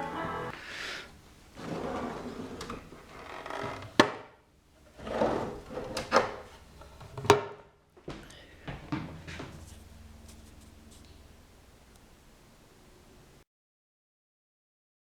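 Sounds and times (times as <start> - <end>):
wooden cabinet parts sliding: 1.6 - 4.0, 4.9 - 7.3.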